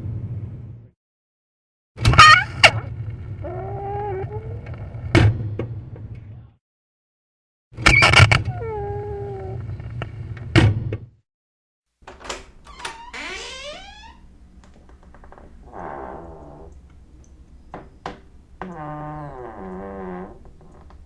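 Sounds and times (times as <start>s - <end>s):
door hinges creaking: 7.9s - 8.4s, 12.0s - 16.8s, 17.8s - 21.0s
door clicks: 12.1s - 15.3s.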